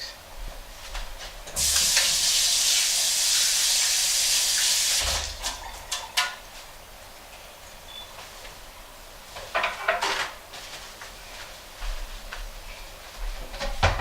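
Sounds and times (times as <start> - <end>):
tap running into sink: 1.5 - 2.4.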